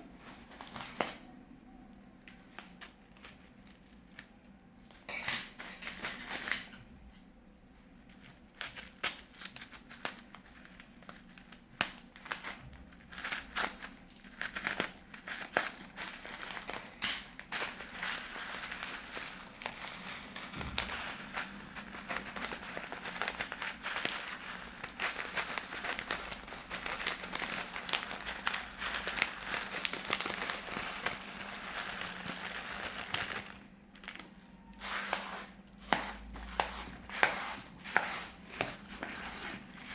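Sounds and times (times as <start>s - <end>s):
plastic bags crinkling: 2.2s - 6.8s, 8.2s - 35.4s.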